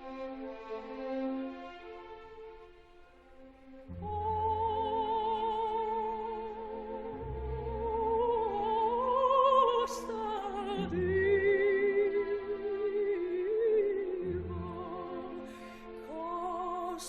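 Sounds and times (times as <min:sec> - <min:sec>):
opera singer with vibrato: 0:03.8 - 0:17.0.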